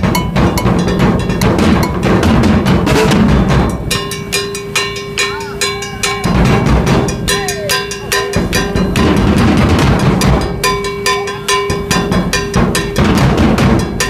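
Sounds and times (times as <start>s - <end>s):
music with driving drum beat: 0.0s - 14.0s
held tone: 2.9s - 9.4s, 10.1s - 13.0s.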